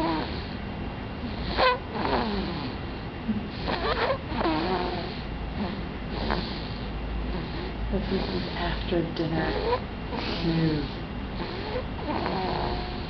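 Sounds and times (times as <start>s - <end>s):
person snoring: 1.4s - 2.8s, 3.5s - 8.6s, 9.5s - 13.0s.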